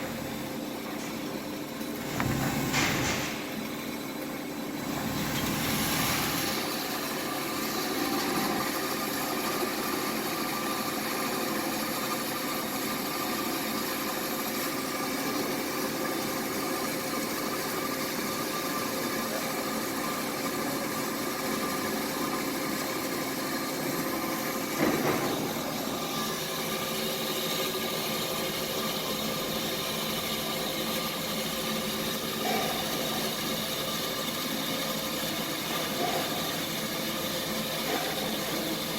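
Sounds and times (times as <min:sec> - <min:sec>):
machine clatter: 0:02.0 - 0:03.7.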